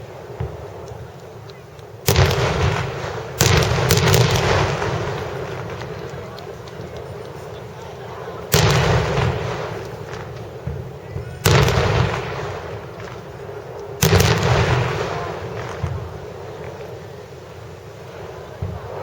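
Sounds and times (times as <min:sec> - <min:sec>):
fireworks booming: 0:00.0 - 0:19.0
rolling rumble: 0:00.0 - 0:19.0
small fireworks pops: 0:00.0 - 0:19.0.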